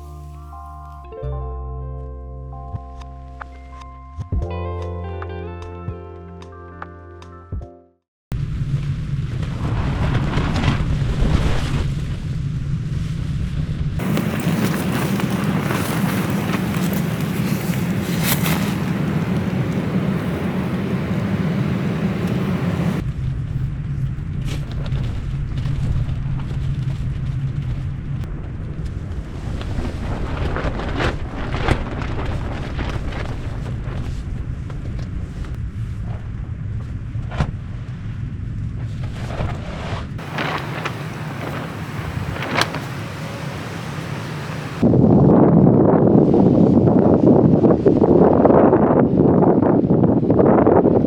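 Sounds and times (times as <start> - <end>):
wind buffeting microphone: 8.5 - 51.0
heavy rain hiss: 14.0 - 23.0, 40.2 - 44.8
sharp crack: 40.2 - 44.8.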